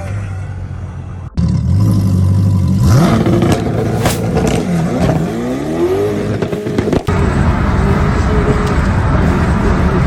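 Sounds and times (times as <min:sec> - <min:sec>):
sharp bang: 0:04.0 - 0:04.5.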